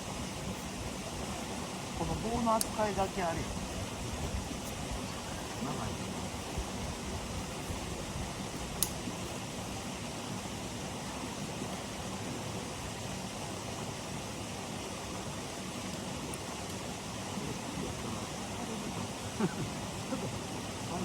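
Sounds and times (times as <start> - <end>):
background hiss: 0.0 - 21.0
sharp click: 8.8 - 9.0.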